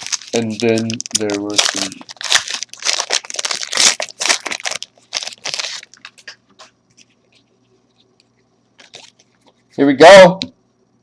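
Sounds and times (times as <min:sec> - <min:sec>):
card pack wrapper crinkling and tearing: 0:00.0 - 0:06.4, 0:08.8 - 0:09.4.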